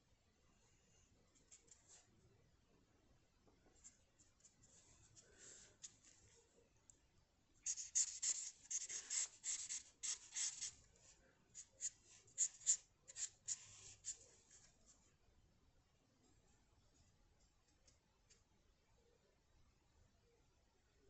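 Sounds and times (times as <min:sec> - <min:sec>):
drawing tool scratching paper: 0:07.6 - 0:10.7.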